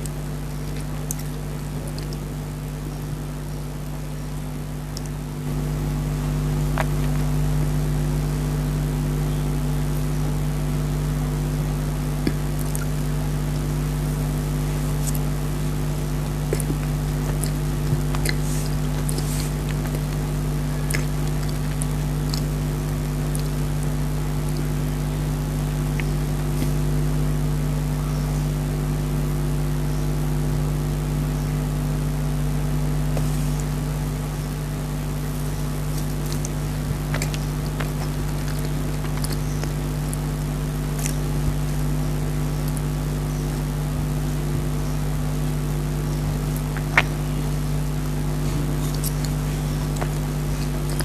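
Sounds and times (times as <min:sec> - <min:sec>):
person chewing: 0:00.0 - 0:02.9, 0:03.5 - 0:07.7, 0:12.0 - 0:27.2, 0:33.0 - 0:43.0, 0:45.4 - 0:51.0
loud steady hum: 0:00.0 - 0:51.0.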